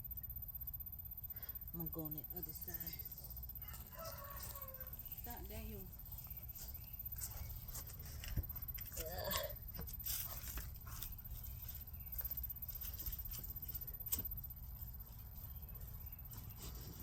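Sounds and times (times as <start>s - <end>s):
hands scraping soil: 3.6s - 17.0s.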